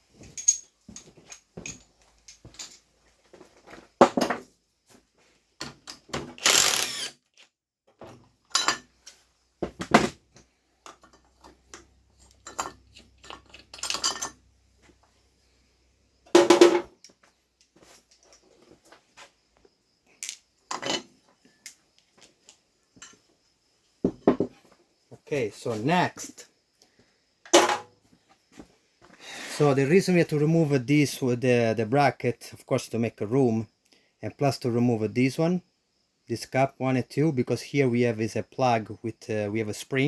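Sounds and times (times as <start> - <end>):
metallic clinks of tools: 0.2 - 2.9, 10.9 - 14.4.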